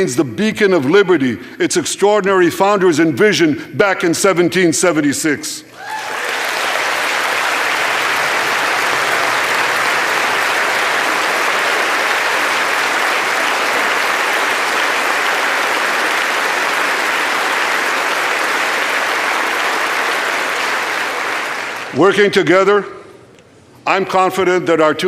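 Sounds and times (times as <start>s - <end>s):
audience applause: 5.8s - 22.0s.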